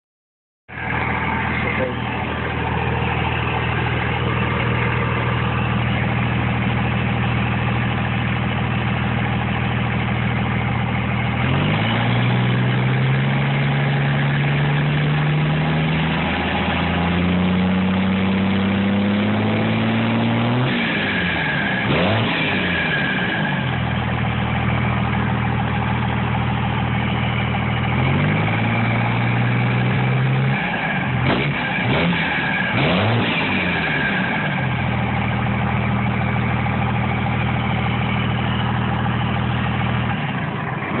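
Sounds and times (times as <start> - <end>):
diesel engine revving: 0.7 - 41.0
turbocharger whistle: 15.2 - 24.0, 30.4 - 34.7.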